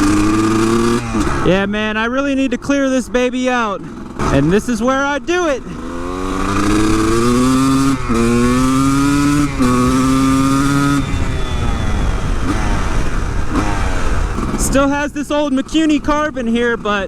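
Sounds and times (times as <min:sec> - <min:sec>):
two-stroke motorcycle engine accelerating: 0:00.0 - 0:17.0.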